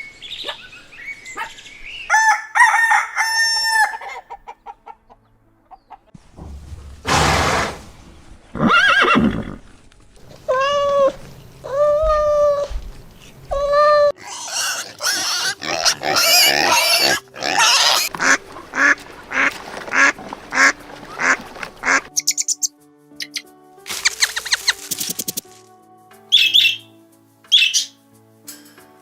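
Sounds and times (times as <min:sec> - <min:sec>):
farm animal calls: 0:14.2 - 0:23.4, 0:26.3 - 0:26.9.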